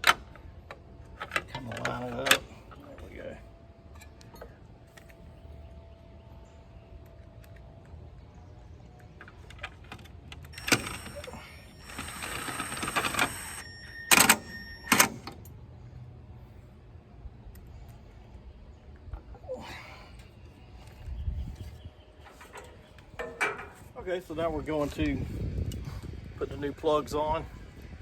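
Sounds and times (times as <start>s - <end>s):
tools and parts rattling: 22.2s - 25.2s.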